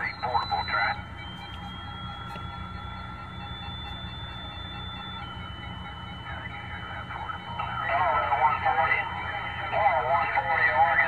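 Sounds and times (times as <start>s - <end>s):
radio band static: 0.0s - 1.0s, 6.2s - 11.0s
low hum: 0.0s - 11.0s.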